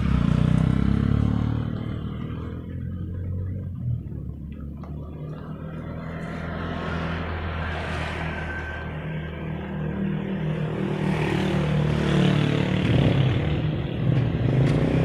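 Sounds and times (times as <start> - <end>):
low engine hum: 0.0 - 11.1
vehicle engine passing: 0.0 - 15.0.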